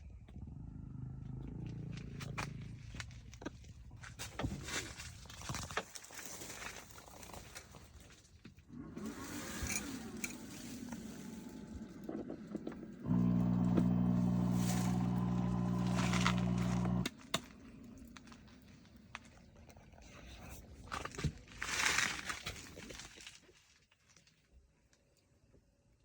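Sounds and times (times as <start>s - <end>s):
engine idling: 13.1s - 17.1s.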